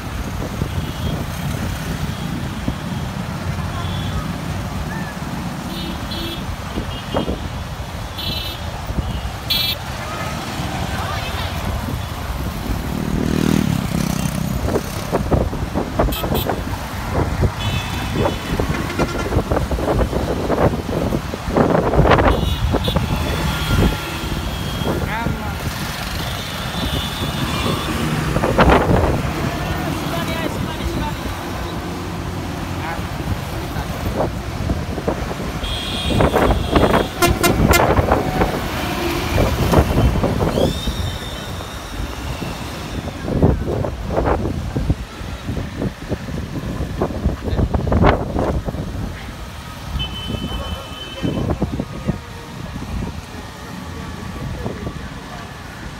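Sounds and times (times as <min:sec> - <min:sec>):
passing road traffic: 0:00.0 - 0:55.9
wind buffeting microphone: 0:11.1 - 0:26.0, 0:26.6 - 0:49.9
vehicle horn: 0:17.6 - 0:19.4, 0:35.6 - 0:38.3, 0:50.0 - 0:51.5
short vehicle horn toot: 0:35.6 - 0:38.0.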